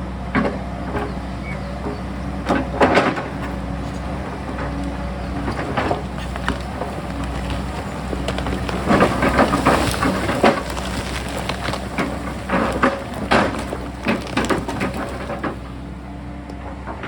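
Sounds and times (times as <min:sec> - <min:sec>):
excavator diesel engine droning: 0:00.0 - 0:17.0
bucket scraping rock and soil: 0:05.2 - 0:15.8.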